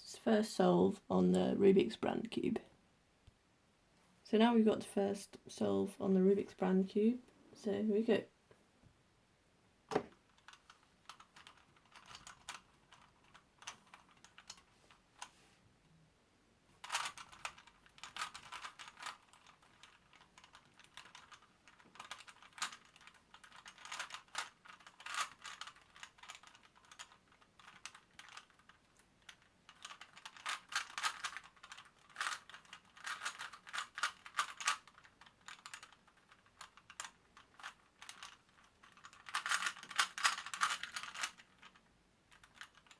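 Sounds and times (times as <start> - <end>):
puzzle cube clicking as turned: 10.1 - 15.3, 16.8 - 42.9.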